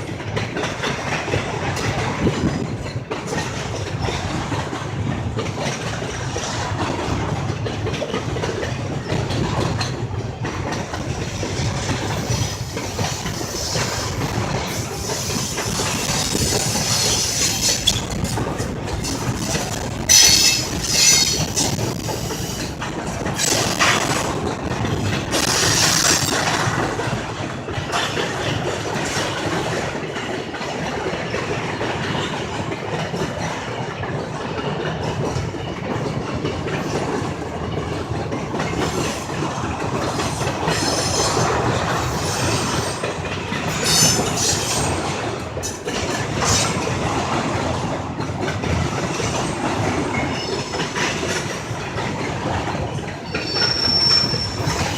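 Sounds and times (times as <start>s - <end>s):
train wheels clattering on rails: 0.0s - 54.9s
wheel squeals: 53.2s - 54.9s.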